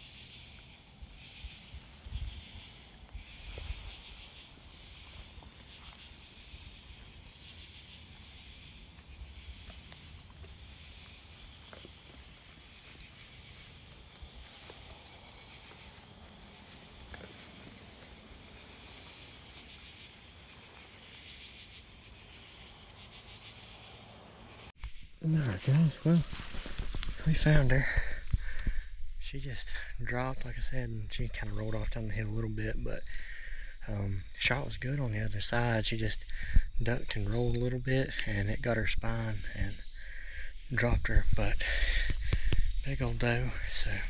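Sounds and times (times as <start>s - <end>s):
insects chirping: 0.0s - 25.1s, 35.0s - 44.0s.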